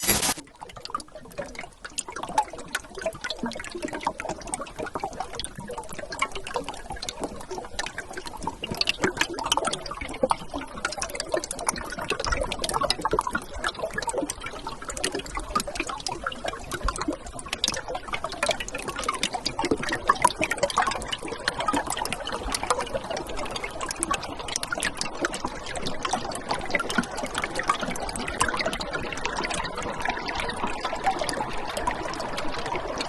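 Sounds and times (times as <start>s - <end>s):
river water gurgling: 10.6s - 33.0s.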